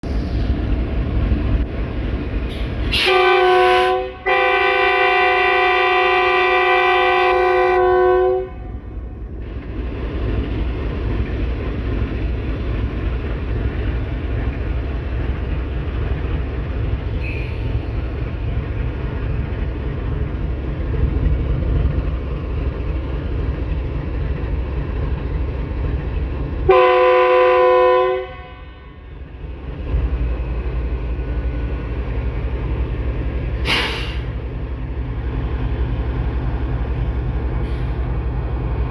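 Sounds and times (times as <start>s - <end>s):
locomotive air horn blasts: 2.9s - 8.8s, 26.7s - 29.0s.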